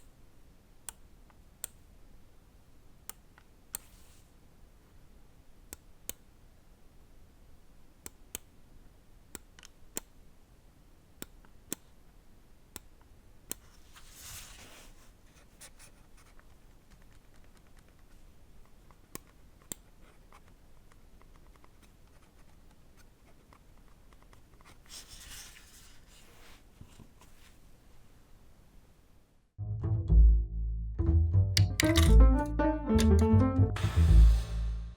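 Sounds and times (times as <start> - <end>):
mouse scroll wheel ticking: 0.9 - 1.8, 9.3 - 10.2, 18.9 - 21.9
mouse button clicks: 31.6 - 32.2.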